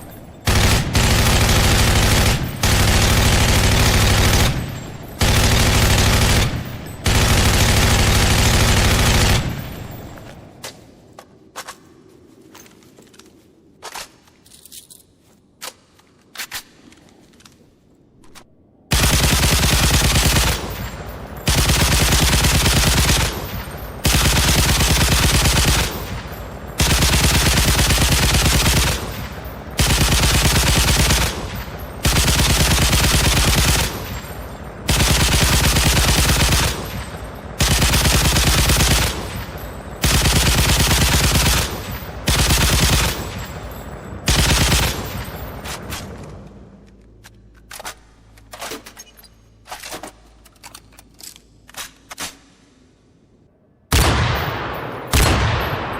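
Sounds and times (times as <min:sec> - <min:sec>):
machine-gun fire bursts: 0:00.5 - 0:10.0, 0:18.9 - 0:20.8, 0:21.4 - 0:43.6, 0:44.3 - 0:45.1.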